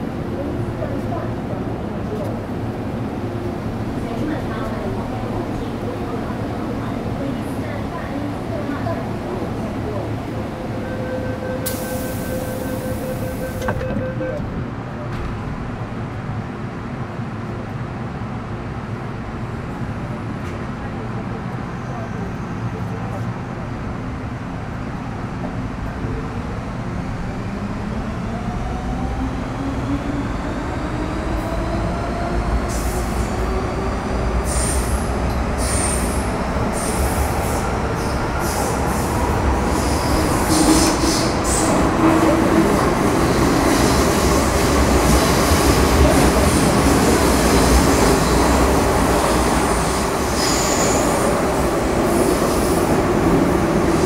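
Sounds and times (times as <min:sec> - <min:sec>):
train rumble: 0:00.0 - 0:54.0
train traction whine: 0:08.1 - 0:16.0.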